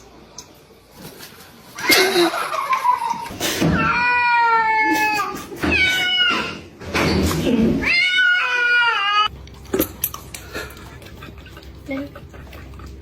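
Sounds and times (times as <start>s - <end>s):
cat meowing loudly: 7.8s - 9.3s.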